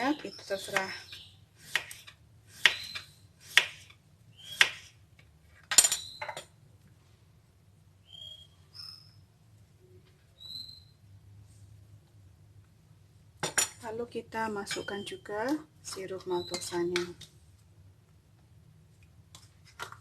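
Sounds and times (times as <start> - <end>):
faint bird chirps: 0.1 - 1.4, 4.3 - 4.7, 8.0 - 11.0, 14.7 - 15.3, 16.2 - 17.0.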